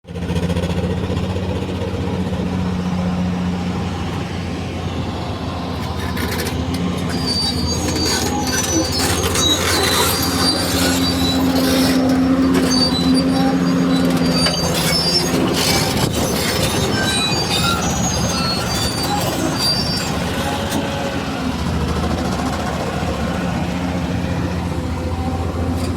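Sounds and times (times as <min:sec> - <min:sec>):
diesel engine misfiring: 0:00.1 - 0:25.9
high-pitched squeaks and clicks: 0:05.7 - 0:20.9.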